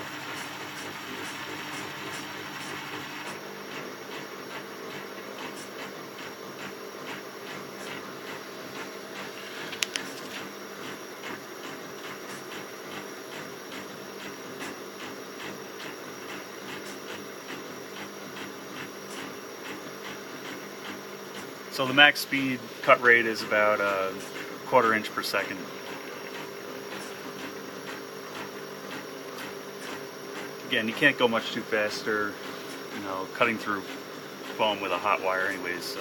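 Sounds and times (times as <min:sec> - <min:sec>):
stepper motors whining hum: 0:00.0 - 0:36.0.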